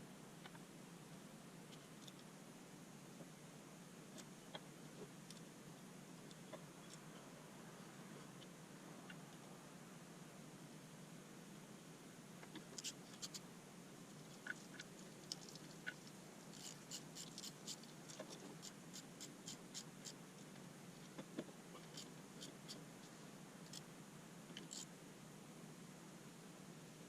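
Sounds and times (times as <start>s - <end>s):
low steady hum: 0.0s - 27.0s
faint clicks and ticks: 1.7s - 2.3s, 4.1s - 5.5s, 14.1s - 23.9s.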